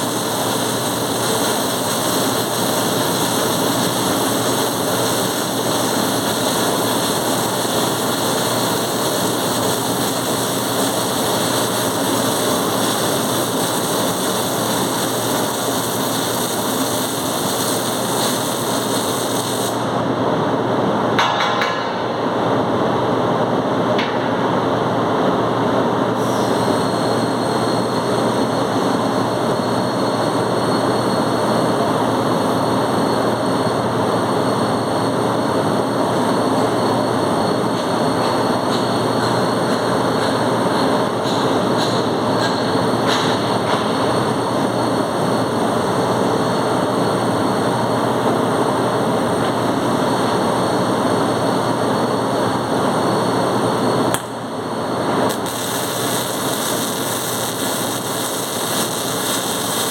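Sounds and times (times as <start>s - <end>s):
welding arc crackling: 0.0s - 20.0s, 54.1s - 59.9s.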